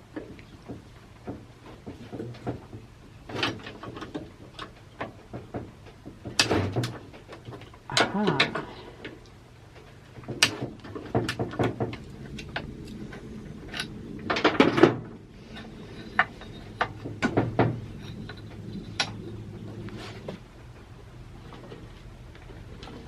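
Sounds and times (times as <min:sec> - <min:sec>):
hand tools clicking and knocking: 0:09.8 - 0:20.4.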